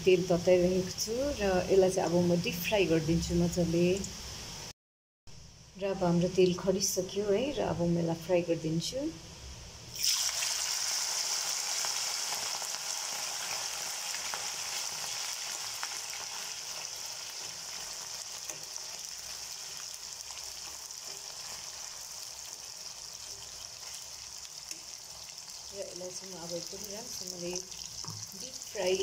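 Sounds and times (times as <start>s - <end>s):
chicken deep-frying in oil: 9.9s - 29.0s.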